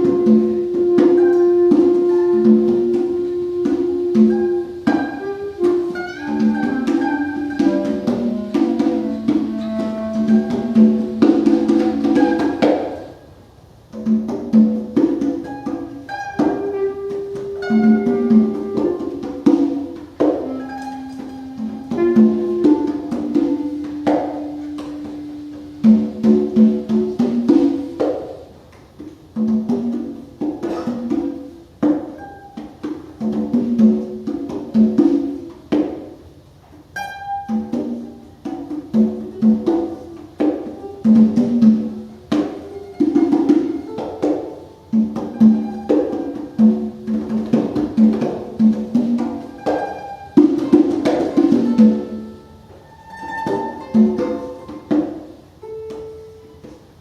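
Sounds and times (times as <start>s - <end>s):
congas played by hand: 0.0s - 57.0s
plucked notes: 0.0s - 57.0s
long held melodic notes: 20.4s - 27.2s.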